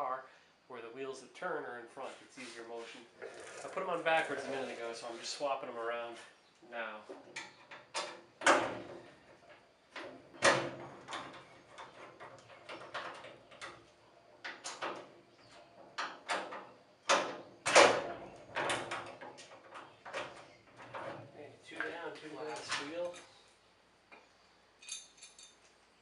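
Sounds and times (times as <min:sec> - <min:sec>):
metal clanks and clicks: 0:15.8 - 0:21.9.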